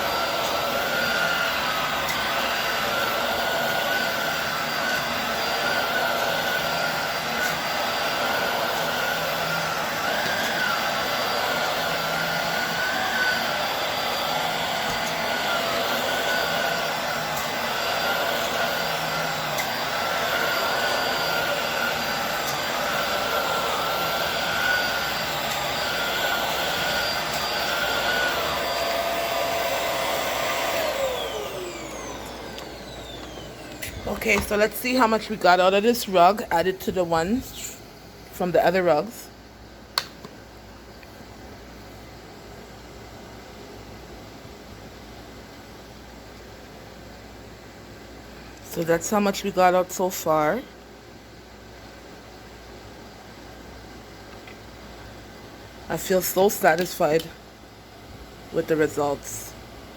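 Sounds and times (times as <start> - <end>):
vacuum cleaner running on rug: 0.0 - 39.4, 48.6 - 50.6, 55.9 - 57.3, 58.5 - 59.9.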